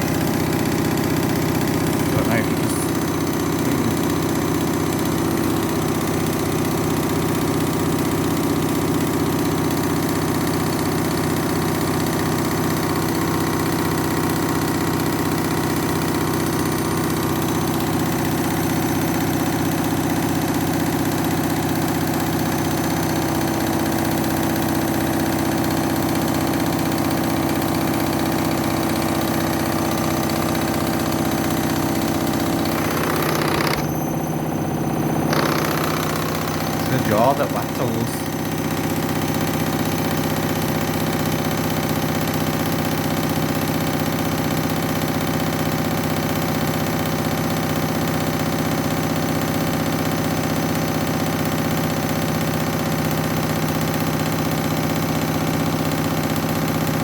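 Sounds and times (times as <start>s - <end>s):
washing machine spinning: 0.0s - 2.2s, 20.8s - 37.4s.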